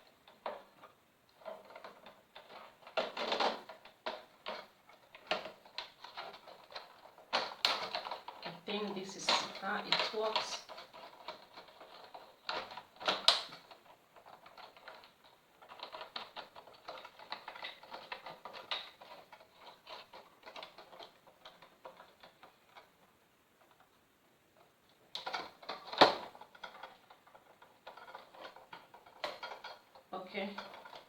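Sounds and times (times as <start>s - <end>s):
small clicks and rattles: 0.0s - 31.0s.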